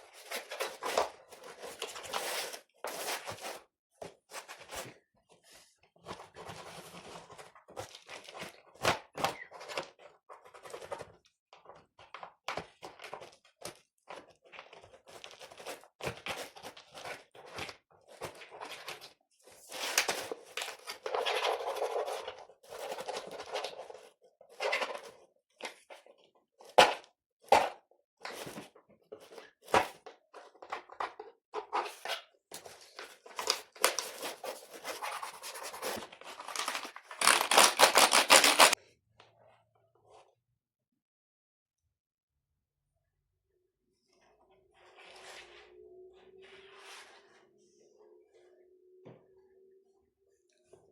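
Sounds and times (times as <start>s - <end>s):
rubbing on keyboard: 34.2s - 38.8s.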